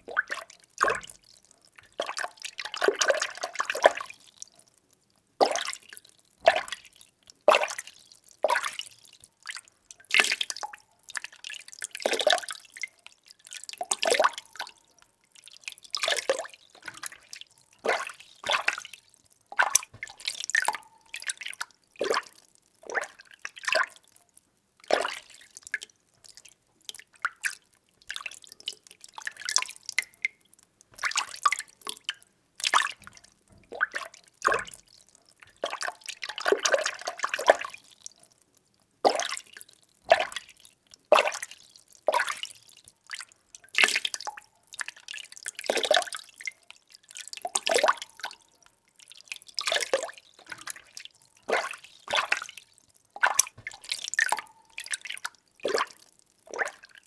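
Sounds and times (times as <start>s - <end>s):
water swishing and splashing: 16.0s - 19.0s, 19.6s - 21.2s, 49.7s - 56.0s.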